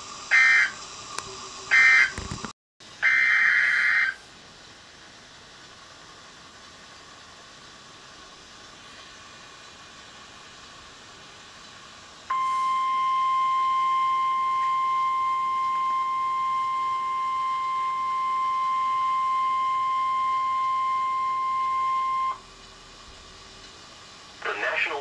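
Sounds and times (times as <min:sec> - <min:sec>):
faint static hiss: 0:00.0 - 0:25.0
steady alarm tone: 0:00.3 - 0:00.8, 0:01.7 - 0:02.2, 0:03.0 - 0:04.2, 0:12.3 - 0:22.8.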